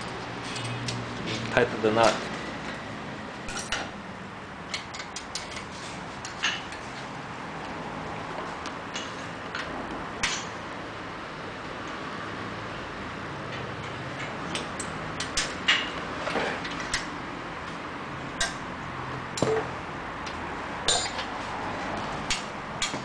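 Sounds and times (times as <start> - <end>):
wrench and metal hardware clinking: 0.0 - 1.0, 3.5 - 3.9, 20.9 - 21.3.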